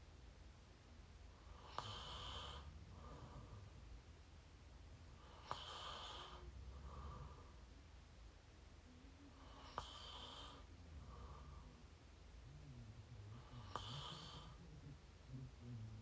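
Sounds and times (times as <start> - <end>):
person snoring: 1.6 - 3.7, 9.3 - 11.8, 12.5 - 16.0.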